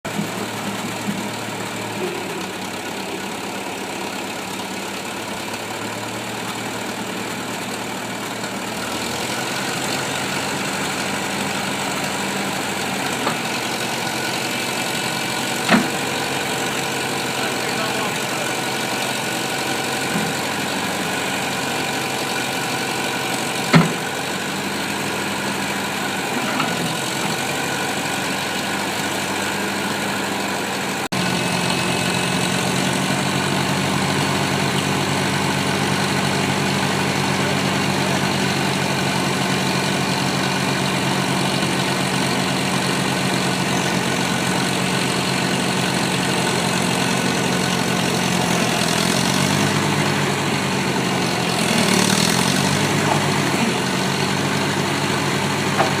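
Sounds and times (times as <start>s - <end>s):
backhoe engine idling: 0.0s - 56.0s.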